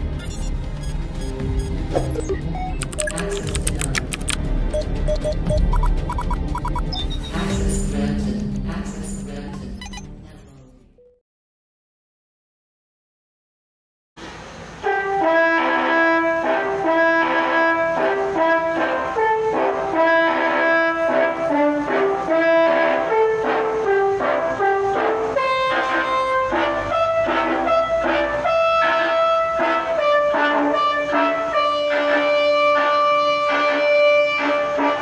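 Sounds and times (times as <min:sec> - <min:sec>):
brass-like melody over a beat: 0:03.4 - 0:06.8, 0:14.8 - 0:35.0.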